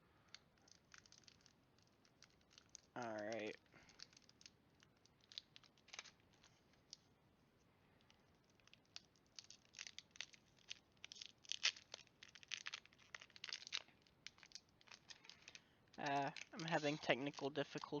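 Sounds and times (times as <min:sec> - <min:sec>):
foil wrapper crinkling and tearing: 0:00.2 - 0:07.0, 0:08.0 - 0:18.0.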